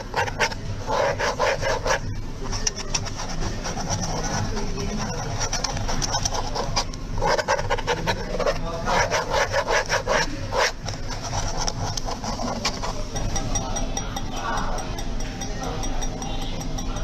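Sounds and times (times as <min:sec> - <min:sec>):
scratching on a hard surface: 0:00.0 - 0:17.0
steady low hum: 0:00.0 - 0:17.0.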